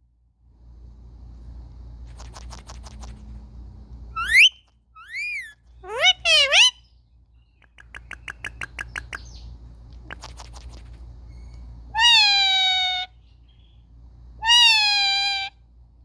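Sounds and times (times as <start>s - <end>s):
parrot calling: 4.2s - 6.8s, 7.7s - 9.4s, 10.0s - 13.2s, 14.4s - 15.6s.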